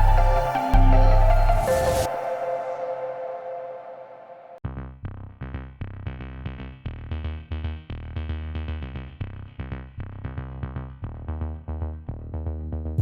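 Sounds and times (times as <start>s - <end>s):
electronic music with steady beat: 0.0s - 4.6s.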